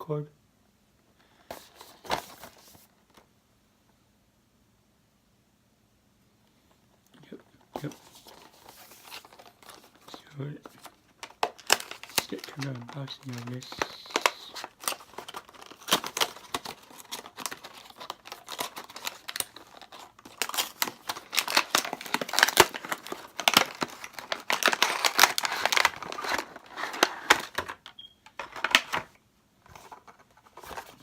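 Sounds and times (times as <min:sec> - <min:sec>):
packaging crinkling and tearing: 0:07.8 - 0:29.1, 0:29.7 - 0:31.0.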